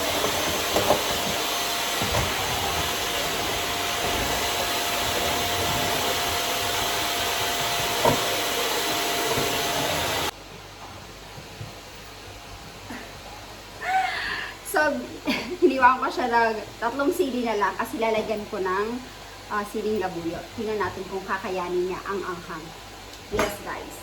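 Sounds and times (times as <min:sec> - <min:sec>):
electric appliance motor whirring: 0:00.0 - 0:10.4.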